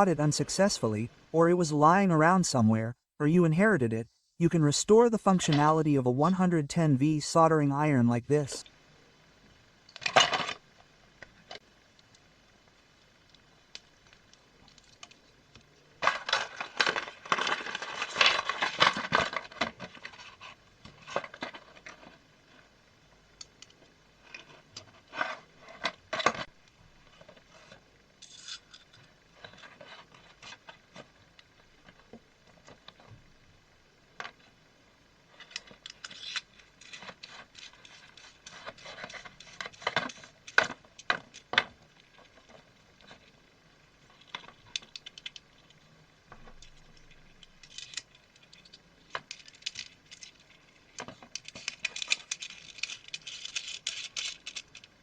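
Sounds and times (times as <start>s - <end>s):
small objects clicking and clattering: 13.2s - 22.2s, 28.2s - 33.1s, 35.3s - 43.4s, 44.1s - 55.0s.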